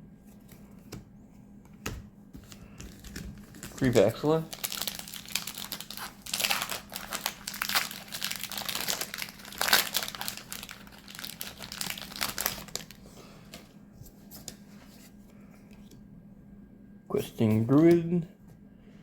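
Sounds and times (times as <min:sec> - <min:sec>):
faint low hum: 0:00.0 - 0:19.0
foil wrapper crinkling: 0:02.6 - 0:13.1.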